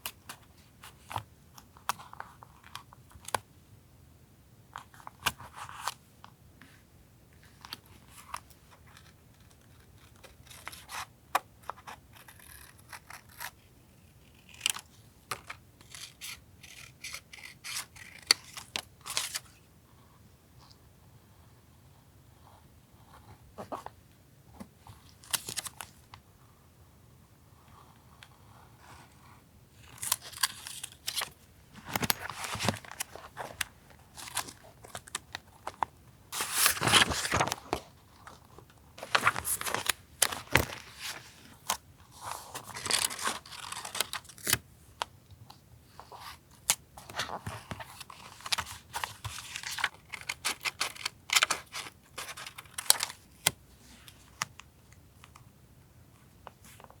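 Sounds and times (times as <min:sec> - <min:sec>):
paper rustling and tearing: 0:36.4 - 0:37.8.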